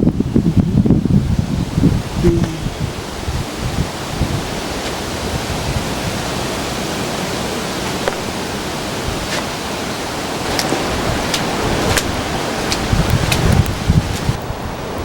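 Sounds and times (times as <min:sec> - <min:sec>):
wind rushing in snowstorm: 0:00.0 - 0:15.0.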